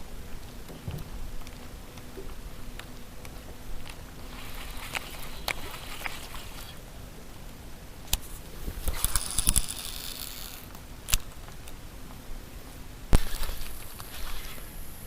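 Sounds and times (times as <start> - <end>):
sharp clicks and knocks: 0.6 - 4.0.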